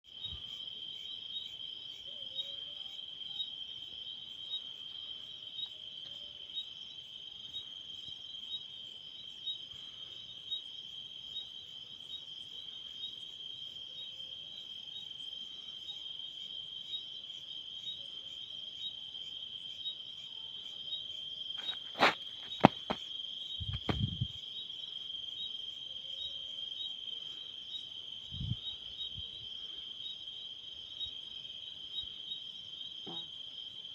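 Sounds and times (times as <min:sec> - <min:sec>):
shrill insect chorus trilling: 0:00.1 - 0:33.9
dull low thuds: 0:23.6 - 0:24.4.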